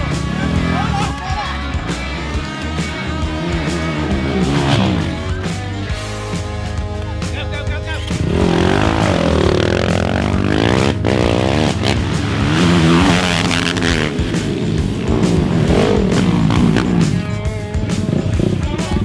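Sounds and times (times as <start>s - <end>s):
atv engines revving: 0.0s - 19.0s
background music: 0.0s - 19.0s.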